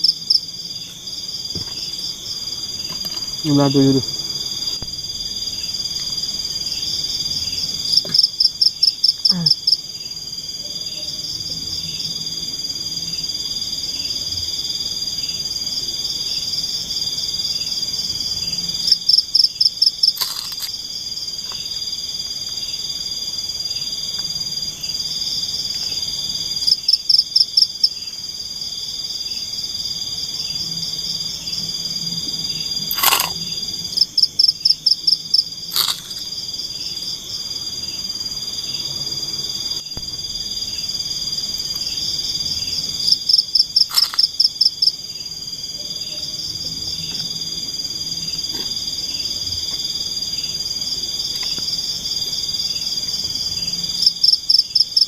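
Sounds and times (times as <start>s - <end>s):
insect chorus: 0.0s - 55.0s
sharp clicks: 43.9s - 44.3s.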